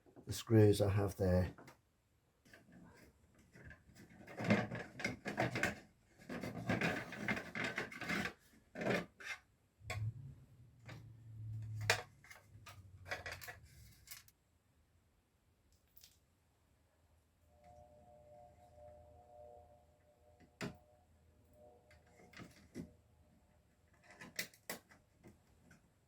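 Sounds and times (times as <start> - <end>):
low hum: 9.8 - 14.0.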